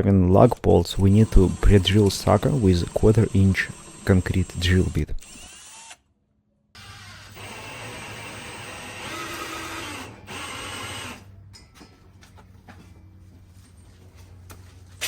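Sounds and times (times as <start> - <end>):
power drill running: 0.5 - 6.0, 6.8 - 11.3.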